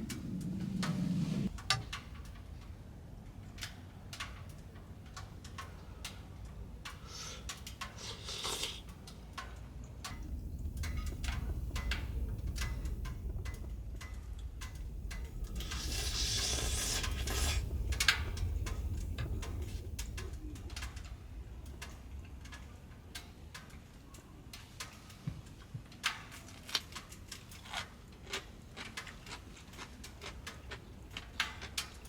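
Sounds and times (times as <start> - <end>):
wind rumbling and gusting: 0.0 - 23.5
light ticks and taps: 3.4 - 27.5.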